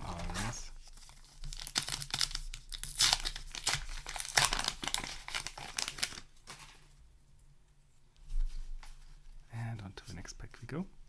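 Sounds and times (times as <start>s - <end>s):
cards rustling: 0.0s - 6.9s
paper wrapper crinkling: 0.0s - 7.0s.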